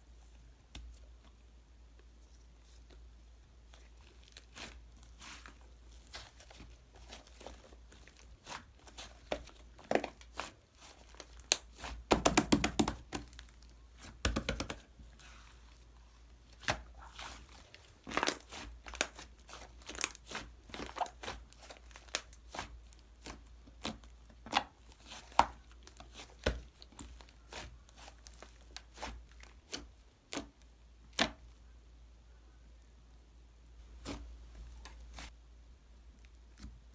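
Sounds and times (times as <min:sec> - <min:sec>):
slime crackling and popping: 0:16.5 - 0:30.5.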